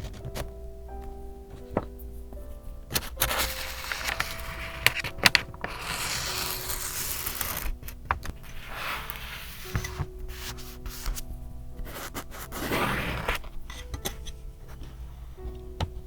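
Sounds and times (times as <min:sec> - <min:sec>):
soft background music: 0:00.0 - 0:16.0
paper rubbing and scraping: 0:02.9 - 0:11.2, 0:11.8 - 0:13.9.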